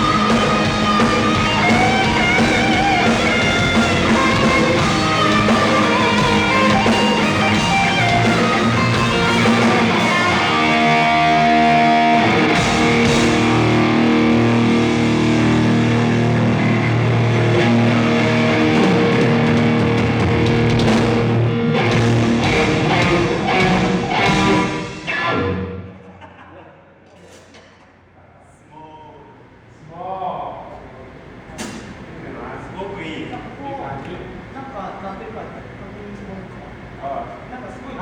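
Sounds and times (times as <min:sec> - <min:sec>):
live instrumental rock band: 0:00.0 - 0:25.9
electric guitar: 0:00.0 - 0:26.0.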